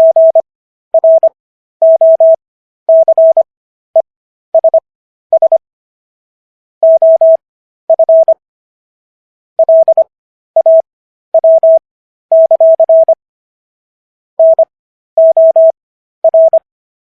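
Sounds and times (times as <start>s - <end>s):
morse code beeps: 0.0s - 0.4s, 1.0s - 3.5s, 4.6s - 5.6s, 6.8s - 8.4s, 9.6s - 13.2s, 14.4s - 16.6s.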